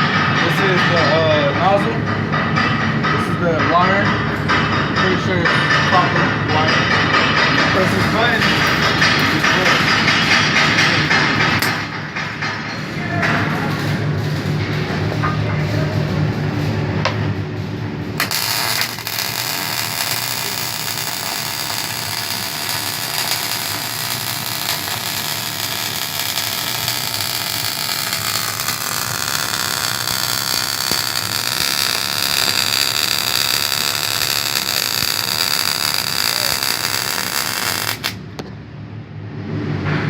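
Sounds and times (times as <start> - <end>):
welding arc hiss: 18.2 - 38.2.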